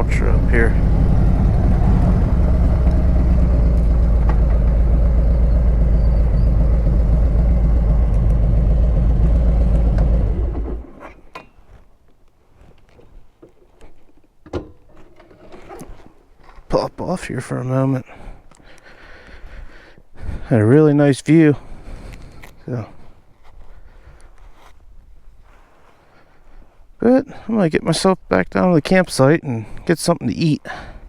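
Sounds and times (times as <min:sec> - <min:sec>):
motorcycle engine running: 0:00.0 - 0:10.9.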